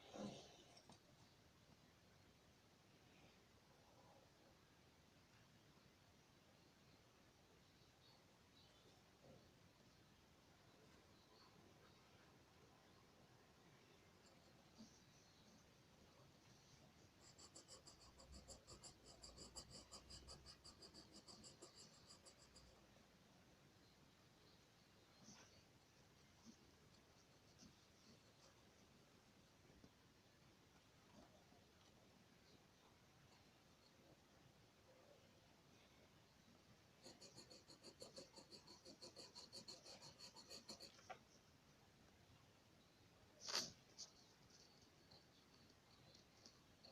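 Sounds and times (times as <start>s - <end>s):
pencil scratching on paper: 16.7s - 22.9s, 37.0s - 41.3s.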